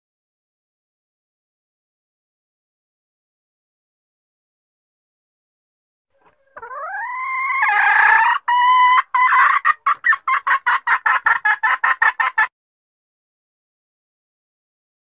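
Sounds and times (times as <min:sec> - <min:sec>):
junglefowl hen calling: 0:06.1 - 0:12.5
hen clucking: 0:06.2 - 0:12.5.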